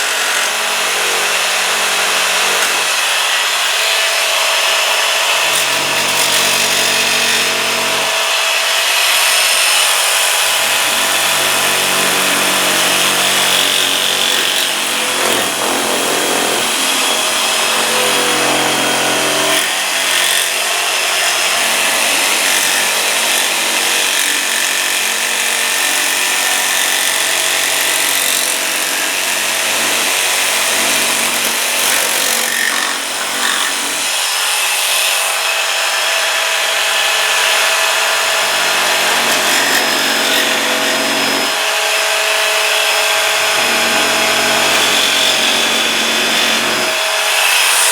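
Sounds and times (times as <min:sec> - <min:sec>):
jigsaw cutting plastic: 0:00.0 - 0:47.9.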